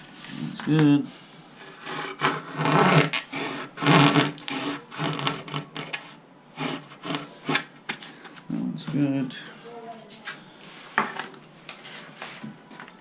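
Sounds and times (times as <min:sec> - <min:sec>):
hacksaw rasping strokes: 0:01.7 - 0:06.0, 0:06.6 - 0:07.7.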